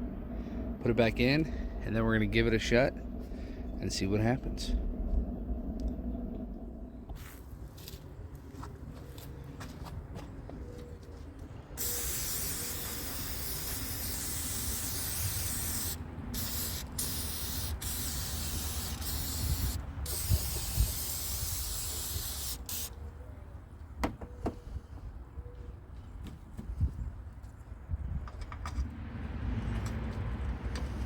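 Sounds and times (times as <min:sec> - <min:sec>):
aerosol can spraying: 0:11.8 - 0:22.9.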